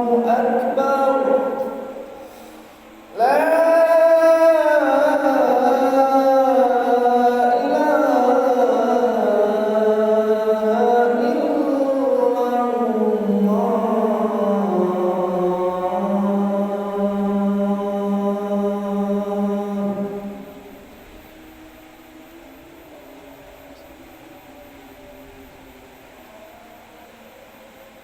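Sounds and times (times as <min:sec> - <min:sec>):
person chanting call to prayer: 0:00.0 - 0:02.2, 0:03.1 - 0:21.0.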